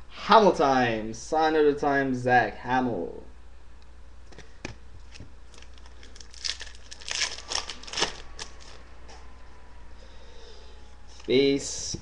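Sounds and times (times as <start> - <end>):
card pack crinkling and rustling: 4.4 - 8.8.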